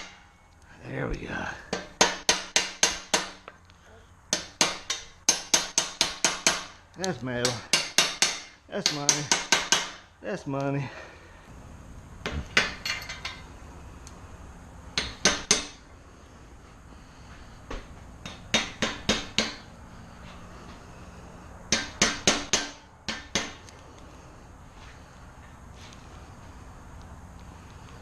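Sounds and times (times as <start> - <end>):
hammer striking metal: 1.7 - 3.5, 4.3 - 6.8, 7.4 - 10.0, 15.0 - 15.8, 18.2 - 19.7, 21.7 - 23.6.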